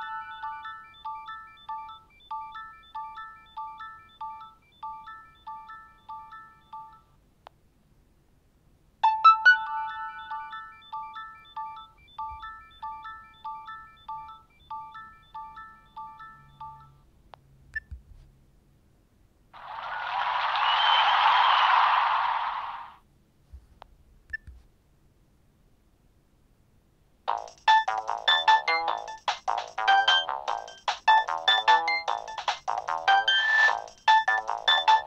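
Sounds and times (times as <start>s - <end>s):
phone alarm tone: 0.0s - 7.0s, 9.0s - 16.9s.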